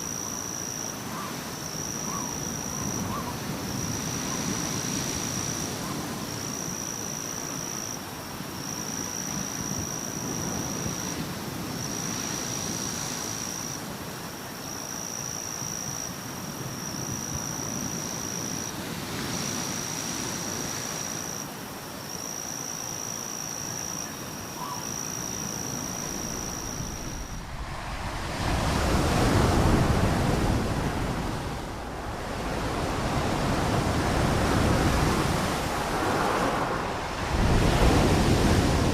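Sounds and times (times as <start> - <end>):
ocean waves washing in: 23.2 - 38.9.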